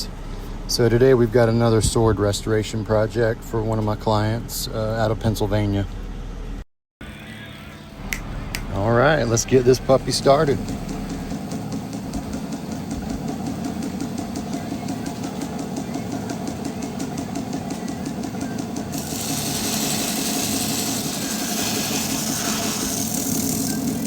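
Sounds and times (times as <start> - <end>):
fast ticking from belt: 8.5 - 24.0
belt grinder running: 18.6 - 24.0
blade grinding hiss: 18.9 - 24.0.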